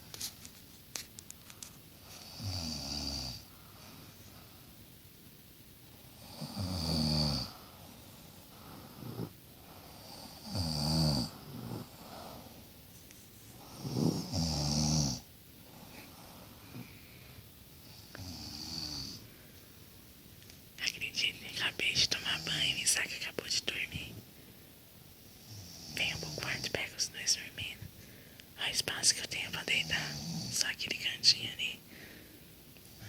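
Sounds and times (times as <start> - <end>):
boy snoring lightly: 6.2 - 7.6, 8.6 - 12.6, 13.6 - 15.2, 17.9 - 19.2, 29.8 - 30.6.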